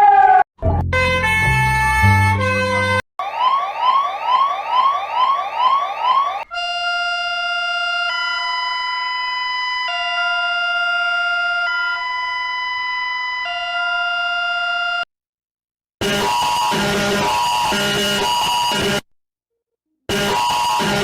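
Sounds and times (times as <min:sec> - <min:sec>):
electronic whooping alarm: 0:03.2 - 0:15.0, 0:20.1 - 0:21.0
two-tone alarm: 0:03.2 - 0:15.1, 0:16.0 - 0:19.0, 0:20.1 - 0:21.0.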